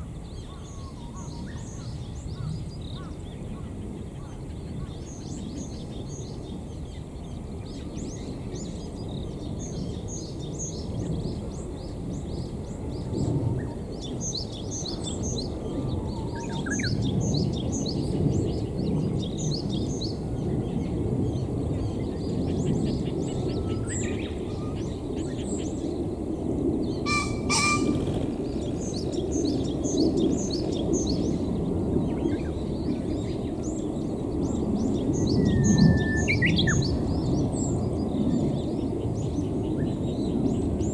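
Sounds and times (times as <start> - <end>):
low outdoor rumble: 26.8 - 31.7
small birds chirping: 26.9 - 32.6
pheasant crowing: 27.0 - 29.3
wing drumming: 27.1 - 31.4.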